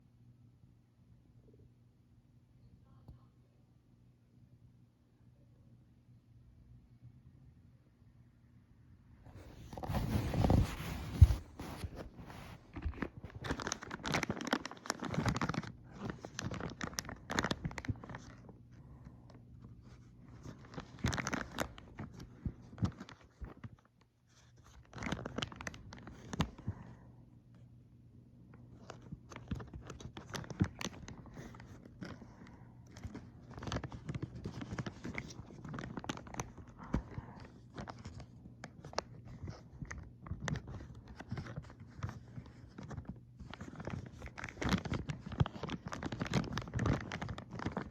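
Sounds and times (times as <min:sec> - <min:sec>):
plastic wrapping crinkling and tearing: 0:09.6 - 0:18.6, 0:19.8 - 0:23.8, 0:24.4 - 0:26.6, 0:28.8 - 0:32.3, 0:32.9 - 0:47.9.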